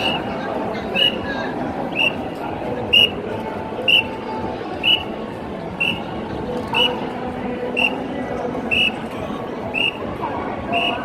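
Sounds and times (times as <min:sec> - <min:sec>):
large crowd noise: 0:00.0 - 0:11.0
whistle blasts: 0:01.9 - 0:02.2, 0:02.9 - 0:03.1, 0:03.9 - 0:04.1, 0:04.8 - 0:05.1, 0:05.8 - 0:06.0, 0:07.8 - 0:08.0, 0:08.7 - 0:09.0, 0:09.7 - 0:10.0, 0:10.7 - 0:11.0.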